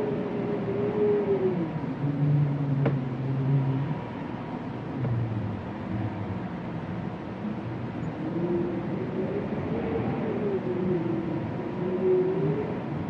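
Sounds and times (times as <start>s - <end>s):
wind moaning: 0.0s - 13.0s.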